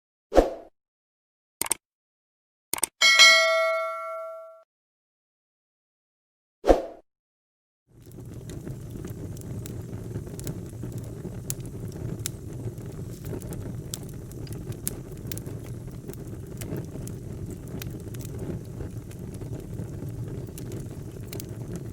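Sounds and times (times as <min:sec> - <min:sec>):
wood fire crackling: 0:07.9 - 0:21.9.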